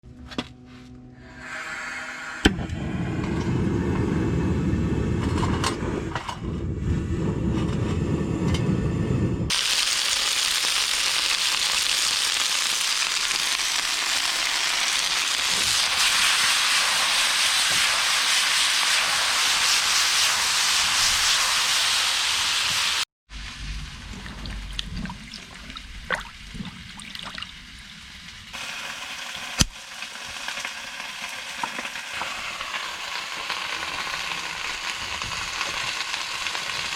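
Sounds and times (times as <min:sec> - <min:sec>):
low rumbling noise: 0:00.9 - 0:09.8, 0:23.3 - 0:28.6
chicken wings sizzling in a pan: 0:09.5 - 0:23.1, 0:28.5 - 0:36.9.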